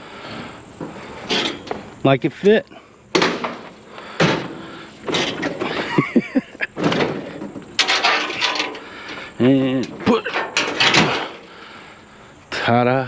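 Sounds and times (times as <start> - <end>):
scrap scraping with squeaks: 0.3 - 1.9, 3.4 - 6.0, 6.7 - 11.5
scrap metal clanking: 0.8 - 1.9, 3.1 - 11.8
knocks: 3.2 - 5.9.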